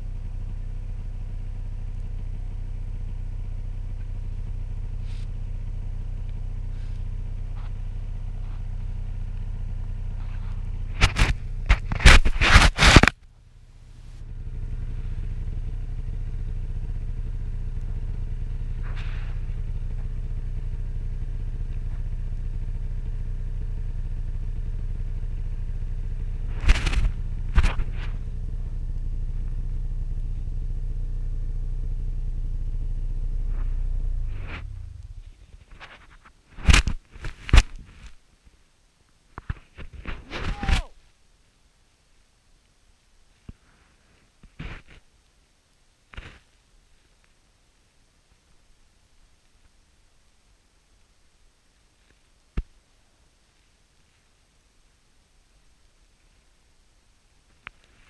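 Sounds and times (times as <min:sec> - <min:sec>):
snowmobile engine running: 0:03.0 - 0:13.0, 0:14.0 - 0:35.6.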